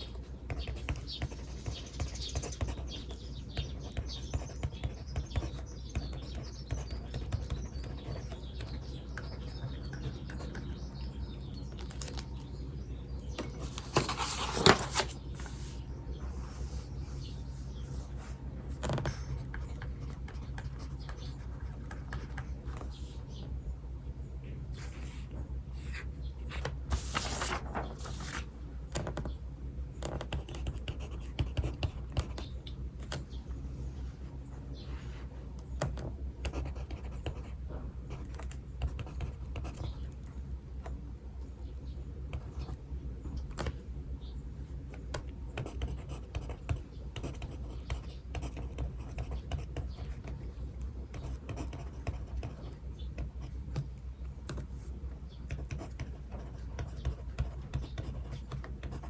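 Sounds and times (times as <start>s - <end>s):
pen scratching on paper: 0.0s - 10.6s, 30.0s - 32.5s, 36.5s - 37.5s, 45.6s - 50.4s, 51.1s - 52.6s, 55.5s - 59.0s
steady low hum: 0.0s - 59.0s.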